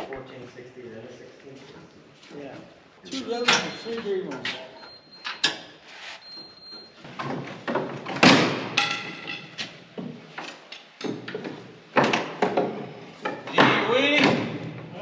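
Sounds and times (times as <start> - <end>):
metal clanking and scraping: 3.4 - 9.8.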